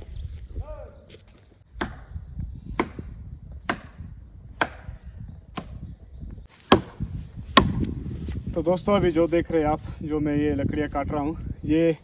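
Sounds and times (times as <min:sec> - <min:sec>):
blade chopping wood: 0:01.8 - 0:02.1, 0:02.8 - 0:05.8, 0:06.6 - 0:08.0.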